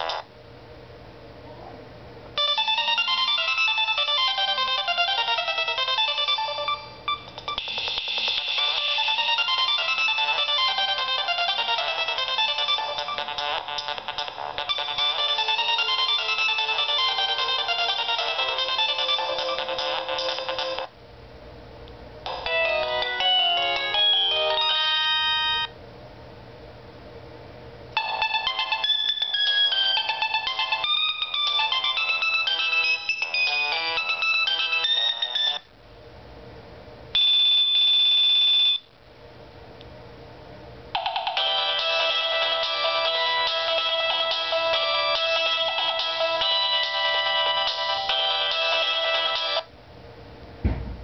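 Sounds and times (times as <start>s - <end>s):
polyphonic phone ringtone: 2.4s - 20.9s, 22.3s - 25.7s, 28.0s - 35.6s, 37.2s - 38.8s, 41.0s - 49.6s.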